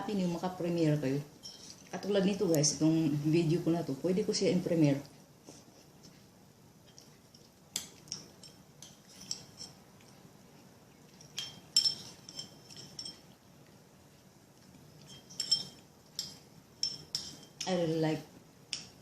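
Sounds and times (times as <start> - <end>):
cutlery clinking against a dish: 7.8 - 10.2, 11.1 - 13.4, 15.0 - 17.8.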